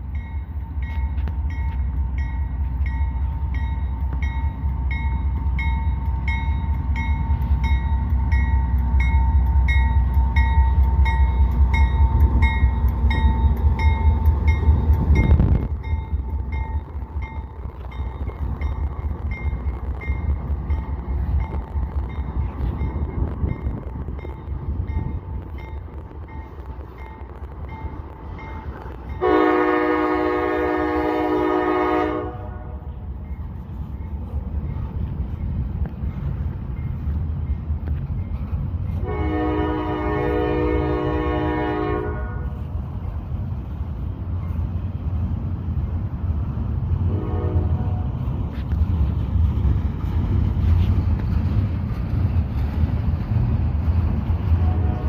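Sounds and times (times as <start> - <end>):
train rumbling: 0.0 - 55.0
multi-chime train horn: 29.2 - 33.0, 38.9 - 42.6, 47.1 - 48.1, 54.6 - 55.0.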